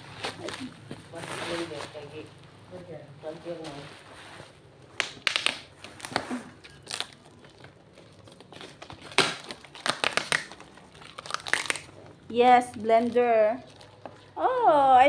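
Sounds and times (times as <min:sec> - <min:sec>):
packaging crinkling and tearing: 0:04.4 - 0:14.4.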